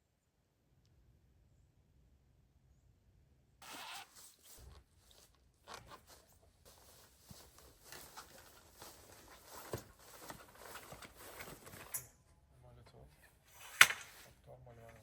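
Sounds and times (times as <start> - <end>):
rustling of camping gear: 3.6 - 12.2.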